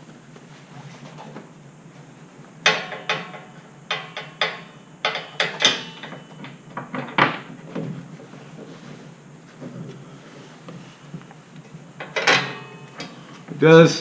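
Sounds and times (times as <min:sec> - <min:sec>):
hardware knocks and clunks: 0:02.6 - 0:08.2, 0:12.0 - 0:13.2.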